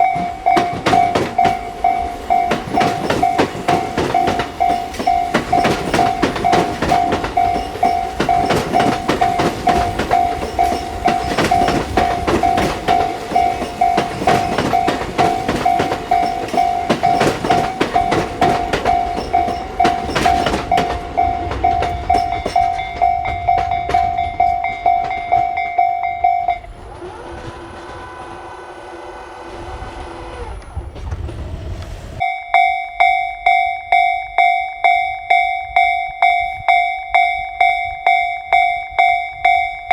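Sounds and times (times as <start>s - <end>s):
humming: 0.0s - 32.2s
train wheels clickety-clack: 0.0s - 32.3s
level-crossing warning bell: 0.0s - 39.9s.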